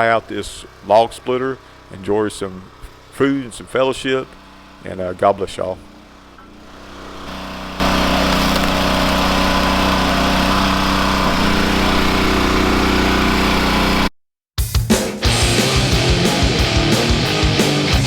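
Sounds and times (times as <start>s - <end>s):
log splitter engine running: 0.0s - 14.1s.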